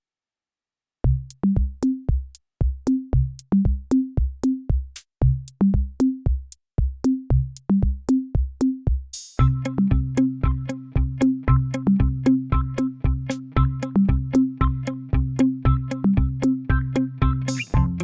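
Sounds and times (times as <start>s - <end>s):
drum machine beat: 1.0s - 18.0s.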